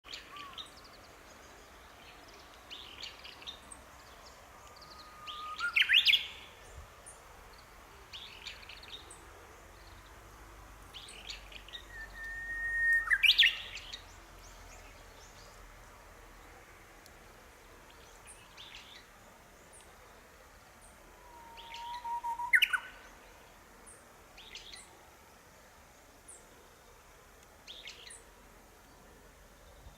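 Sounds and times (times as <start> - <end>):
faint bird chirps: 0.1 - 6.6, 11.0 - 15.6, 20.8 - 25.0
bird singing whistled song: 4.8 - 6.5, 11.0 - 14.0, 21.2 - 23.1.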